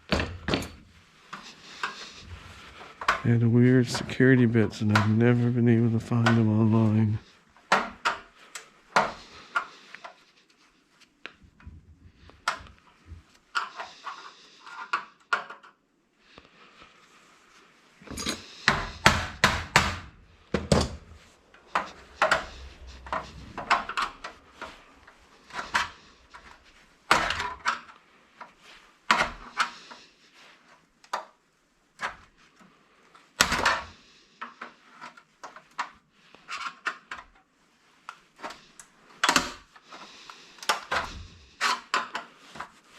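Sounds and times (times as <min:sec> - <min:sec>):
tool scraping: 0:18.0 - 0:27.7.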